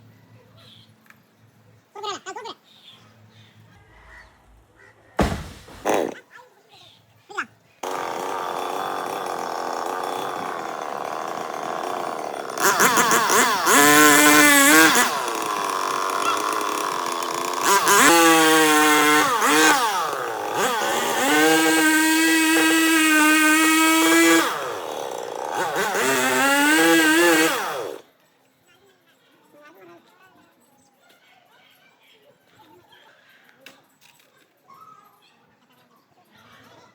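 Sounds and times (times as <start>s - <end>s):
chainsaw engine idling and revving: 7.8s - 28.1s.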